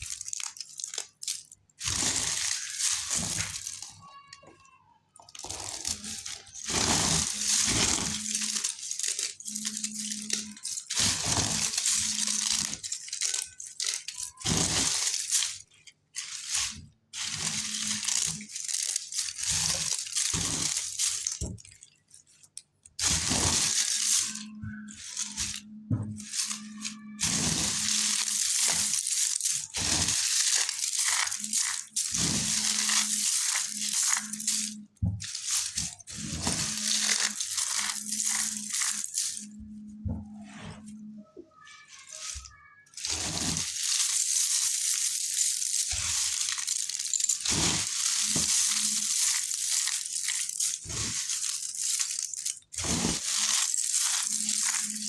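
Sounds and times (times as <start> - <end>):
dry clay crunching: 0.0 - 4.4, 5.2 - 40.0, 41.8 - 55.0.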